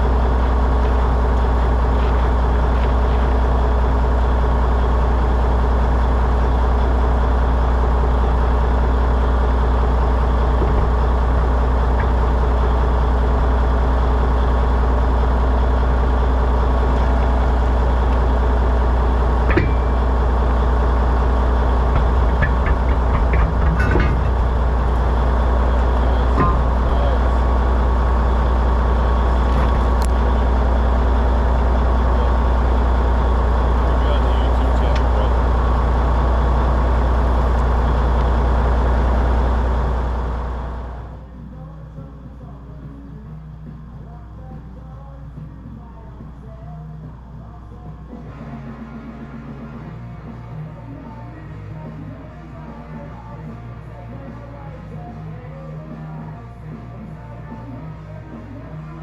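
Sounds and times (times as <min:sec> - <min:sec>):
heavy engine idling: 0:00.0 - 0:59.0.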